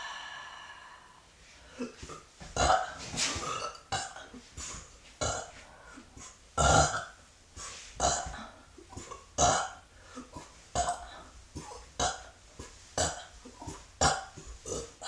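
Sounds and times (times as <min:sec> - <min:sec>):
woman burping: 0:01.8 - 0:04.4.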